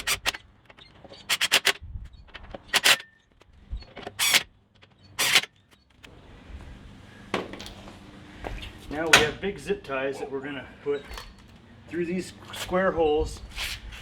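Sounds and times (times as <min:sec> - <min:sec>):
metal bolts and tools clinking: 0:00.0 - 0:05.6.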